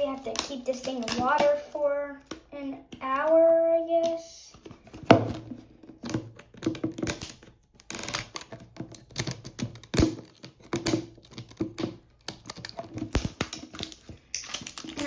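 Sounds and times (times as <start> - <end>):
toy packaging clicks and crackles: 0.0 - 4.8, 6.2 - 15.0.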